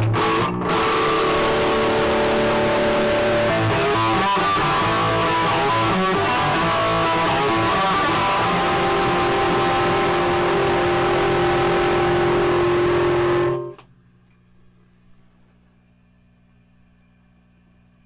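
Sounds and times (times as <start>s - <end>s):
electric guitar through amplifier: 0.0s - 13.9s.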